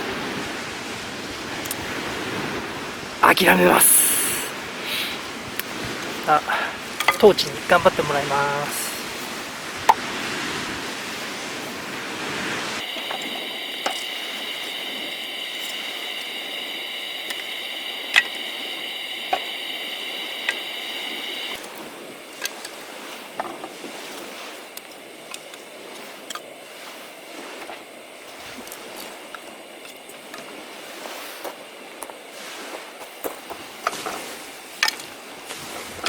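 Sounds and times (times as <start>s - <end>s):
gas torch burner hissing: 3.0s - 10.0s, 11.2s - 22.3s.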